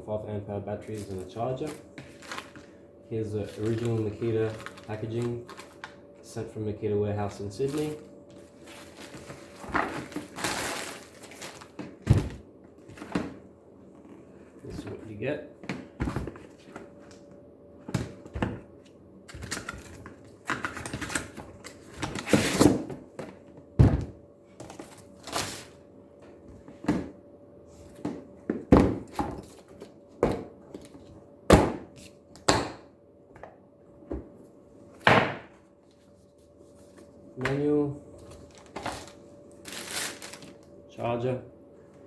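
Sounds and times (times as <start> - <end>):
packaging rustling: 3.4 - 6.0, 8.6 - 11.8, 38.3 - 40.6.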